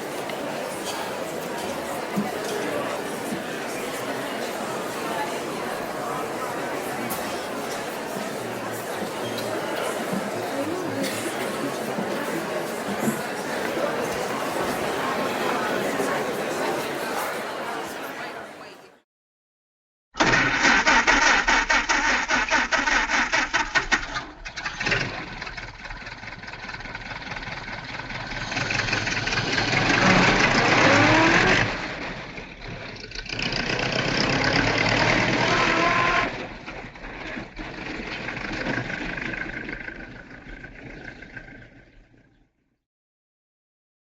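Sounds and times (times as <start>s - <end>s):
car engine chugging: 20.2s - 41.8s.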